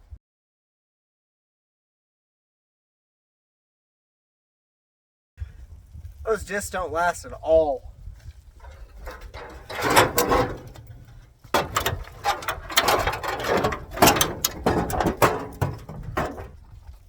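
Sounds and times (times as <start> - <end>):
metal clattering and scraping: 8.6 - 17.0.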